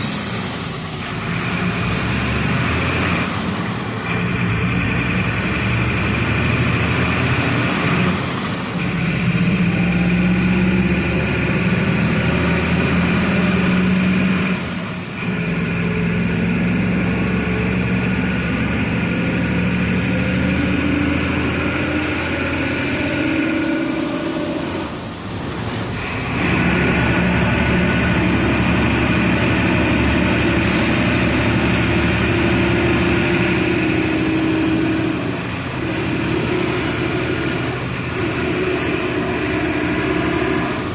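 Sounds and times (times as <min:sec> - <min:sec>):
bus diesel engine under load: 0:00.0 - 0:40.9.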